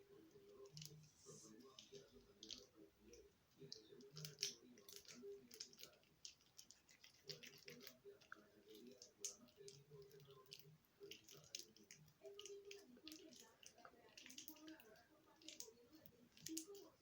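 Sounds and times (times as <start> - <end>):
sticky slime clicks and crackles: 8.8 - 17.0.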